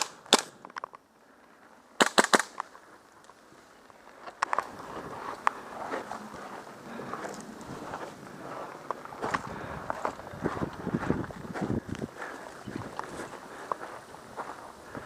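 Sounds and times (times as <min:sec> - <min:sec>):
airsoft gun shots: 0:02.0 - 0:02.6.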